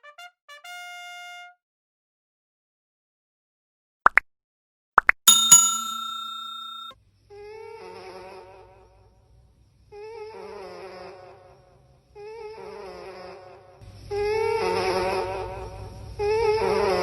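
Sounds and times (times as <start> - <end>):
bright bell ding: 5.3 - 6.9.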